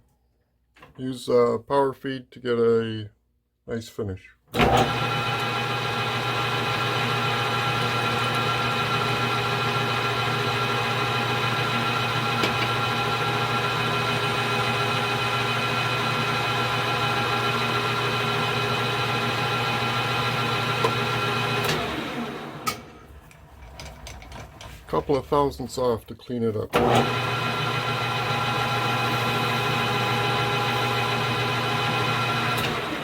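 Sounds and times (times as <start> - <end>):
metal lathe running: 4.6 - 22.9, 26.8 - 33.0.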